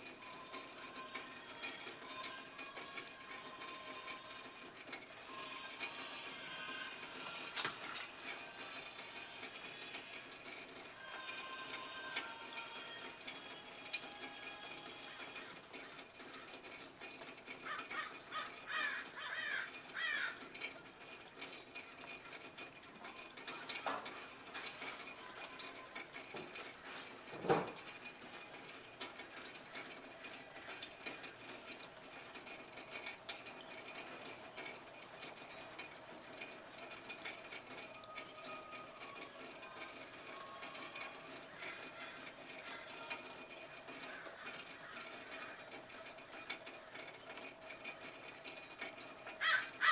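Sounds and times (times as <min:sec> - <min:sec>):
birds calling: 0:17.6 - 0:20.4, 0:49.4 - 0:49.9.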